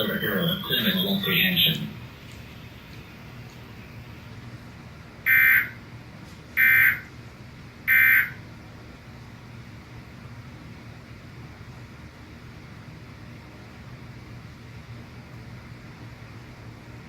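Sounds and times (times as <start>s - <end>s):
screechy two-tone data bursts: 5.3s - 5.8s.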